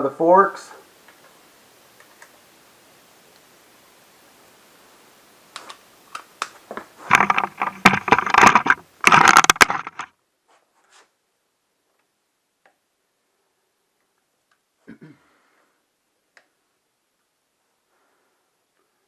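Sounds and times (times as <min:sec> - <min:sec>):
metal hand tools clicking and clattering: 0:07.1 - 0:10.1.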